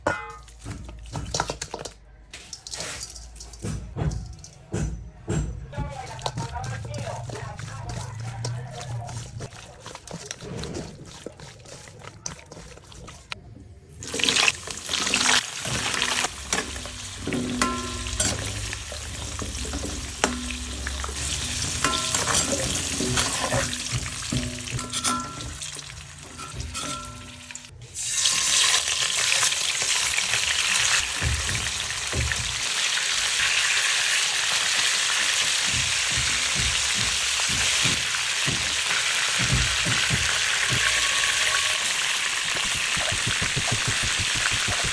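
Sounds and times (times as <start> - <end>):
utensil clicking and scraping pan: 0.1 - 4.6, 5.8 - 13.4
food sizzling in oil: 14.0 - 44.9.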